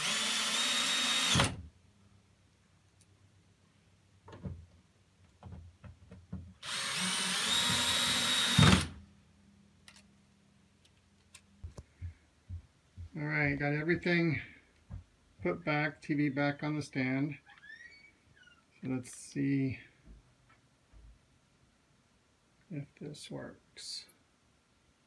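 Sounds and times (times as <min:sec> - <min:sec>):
power drill whining: 0:00.0 - 0:01.6, 0:06.6 - 0:09.0.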